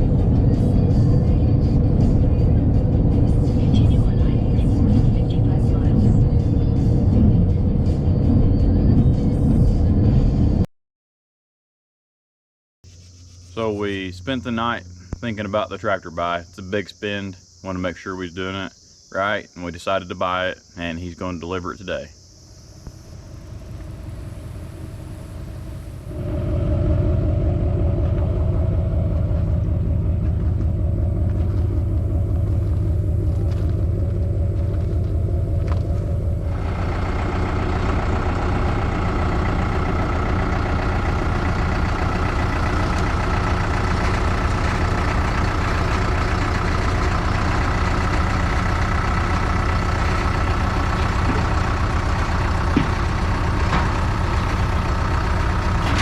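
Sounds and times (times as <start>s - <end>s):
heavy vehicle engine running: 0.0s - 10.7s, 22.4s - 56.0s.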